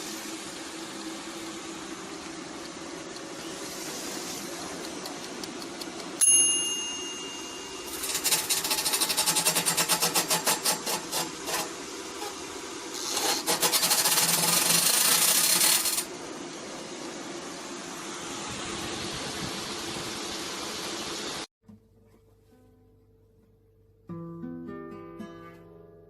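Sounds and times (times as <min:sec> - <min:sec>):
air fryer fan humming: 0:00.0 - 0:21.5
sharp metallic ring: 0:06.2 - 0:08.4.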